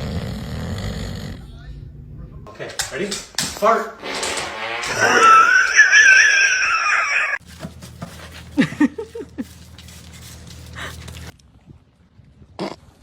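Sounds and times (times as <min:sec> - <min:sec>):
pet crying: 0:04.8 - 0:07.4.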